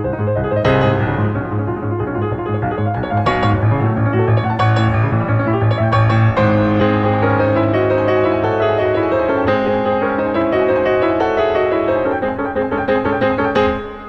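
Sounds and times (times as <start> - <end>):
steady bass line: 0.0 - 9.2
piano background music: 0.0 - 14.0.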